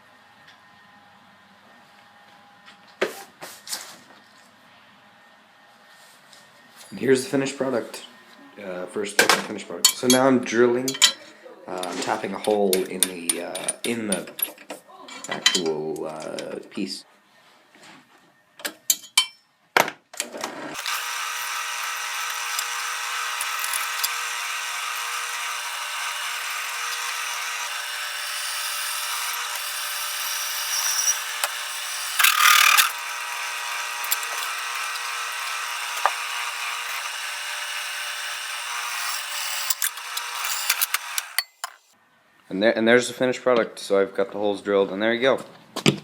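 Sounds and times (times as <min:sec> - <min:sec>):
electric drill boring metal: 0:20.7 - 0:41.9
sharp clicks: 0:30.7 - 0:41.8.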